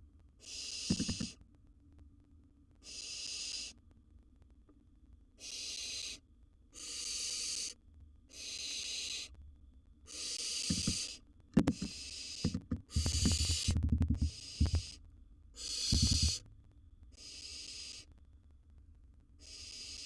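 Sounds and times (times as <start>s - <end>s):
owl nestlings hissing: 0.4s - 1.4s, 2.8s - 3.8s, 5.4s - 6.2s, 6.8s - 9.3s, 10.1s - 15.0s, 15.6s - 16.4s, 17.1s - 18.1s, 19.4s - 20.0s
knocks and scuffs on wood: 10.7s - 11.0s, 11.6s - 14.8s.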